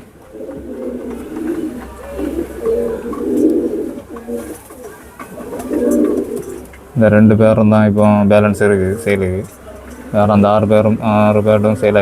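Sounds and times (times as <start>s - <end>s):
pigeons cooing: 0.0s - 7.7s.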